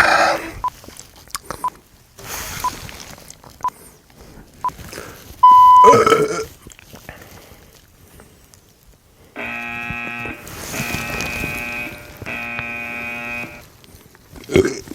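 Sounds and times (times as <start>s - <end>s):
person burping loudly: 0.0s - 0.6s, 5.5s - 6.5s, 14.4s - 14.9s
long loud beep: 5.4s - 6.0s
short electronic beeps: 5.4s - 6.0s.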